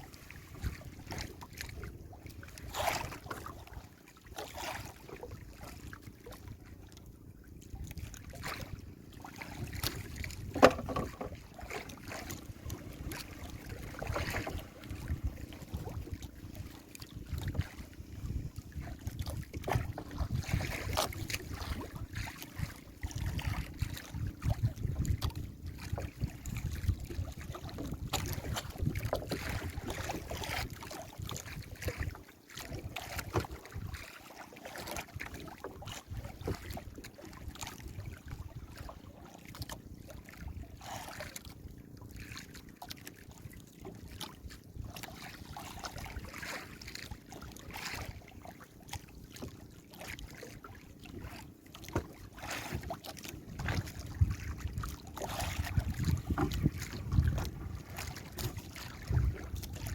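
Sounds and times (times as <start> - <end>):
sea water splashing around boat: 0.0 - 59.9
wind buffeting microphone: 9.6 - 32.1, 53.5 - 59.9.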